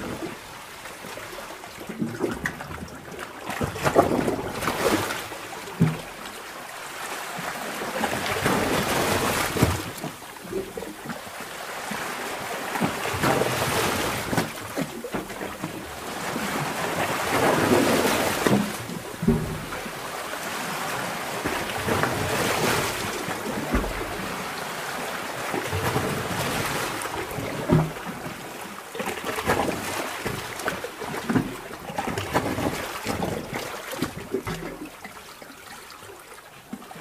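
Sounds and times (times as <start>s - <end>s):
underwater water surging: 0.0s - 37.0s
sharp pops and knocks: 18.5s - 19.8s.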